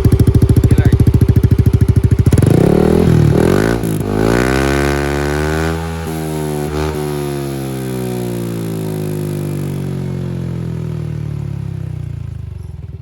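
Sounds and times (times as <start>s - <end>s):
scooter engine revving: 0.0s - 13.0s.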